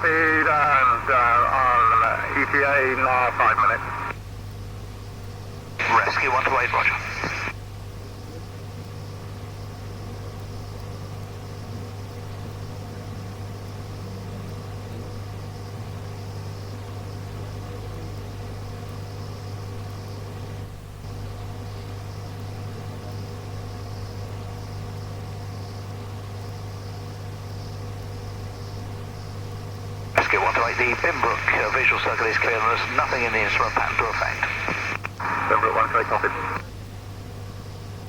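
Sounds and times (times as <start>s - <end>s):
steady radio tones: 0.0s - 4.2s, 5.8s - 7.6s, 30.2s - 36.7s
radio hum and hiss: 0.0s - 37.8s.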